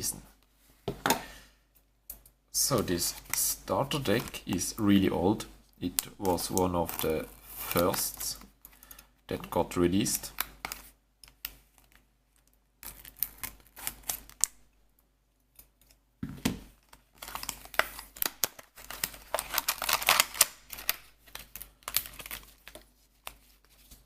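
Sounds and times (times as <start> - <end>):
packaging rustling and crinkling: 5.8 - 8.8, 16.7 - 24.0.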